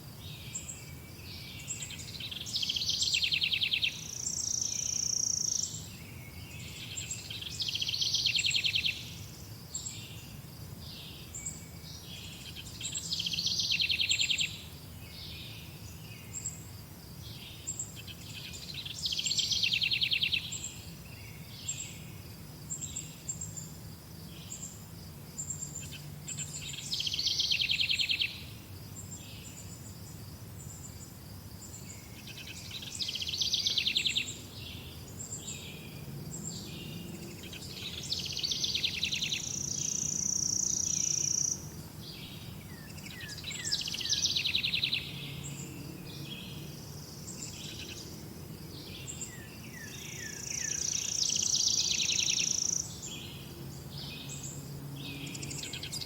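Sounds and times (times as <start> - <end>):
songbird trilling: 25.4 - 28.5, 36.5 - 46.6.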